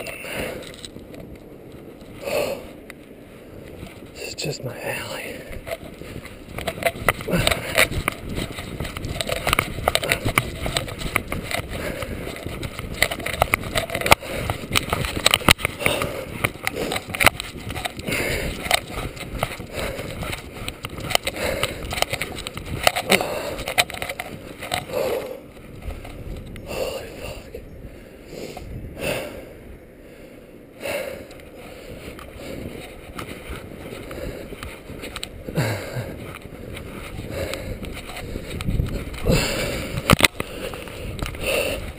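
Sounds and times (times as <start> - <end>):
nylon clothing rustling: 3.4 - 26.5
footsteps crunching in snow: 3.4 - 27.5, 31.4 - 41.9.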